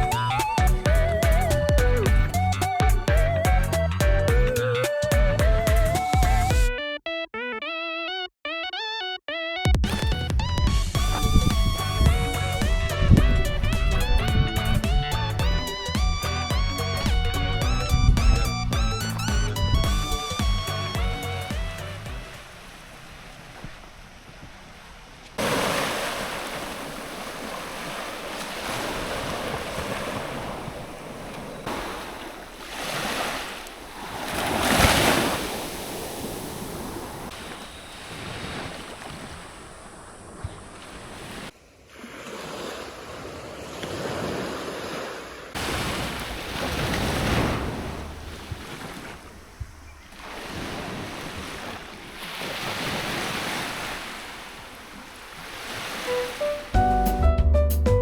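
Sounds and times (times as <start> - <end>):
wind buffeting microphone: 10.6 - 25.3, 26.2 - 41.5
ocean waves washing ashore: 11.0 - 56.8.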